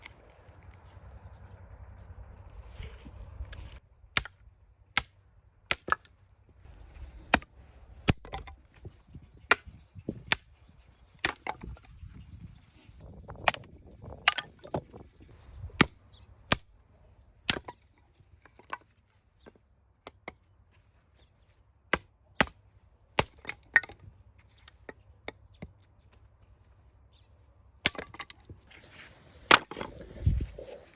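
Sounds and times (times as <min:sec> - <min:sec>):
axe chopping firewood: 0:04.1 - 0:06.2, 0:07.2 - 0:10.5, 0:11.1 - 0:11.8, 0:13.2 - 0:15.0, 0:15.7 - 0:16.8, 0:17.4 - 0:17.9, 0:21.9 - 0:24.0, 0:27.8 - 0:28.6, 0:29.4 - 0:30.0.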